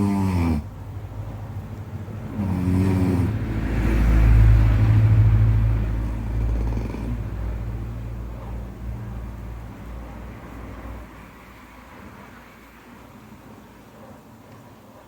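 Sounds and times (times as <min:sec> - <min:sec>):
person snoring loudly: 0:00.0 - 0:00.7, 0:02.4 - 0:03.5, 0:06.1 - 0:07.2.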